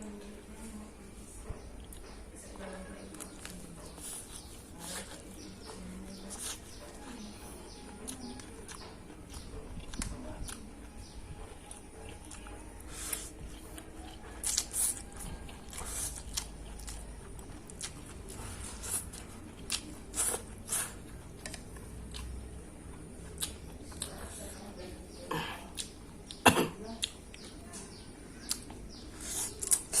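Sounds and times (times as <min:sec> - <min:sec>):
person chewing noodles: 0:06.3 - 0:07.0, 0:07.8 - 0:24.5, 0:25.4 - 0:26.4, 0:28.4 - 0:30.0.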